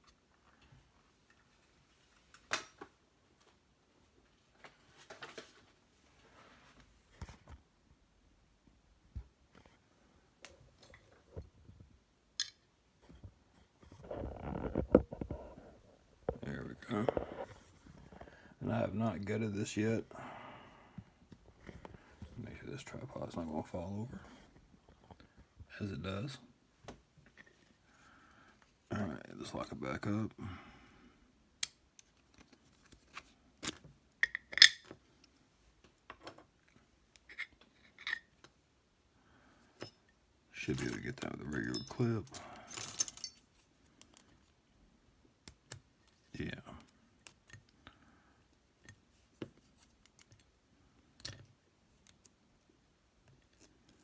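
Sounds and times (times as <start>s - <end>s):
small metal lock parts clicking: 34.2s - 34.9s, 51.2s - 52.3s.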